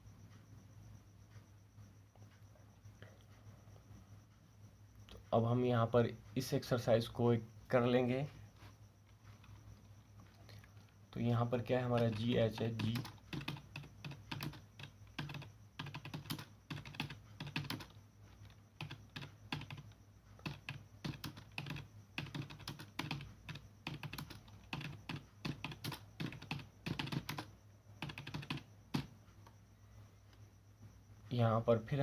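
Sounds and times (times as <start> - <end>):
keyboard typing clicks: 11.8 - 29.6.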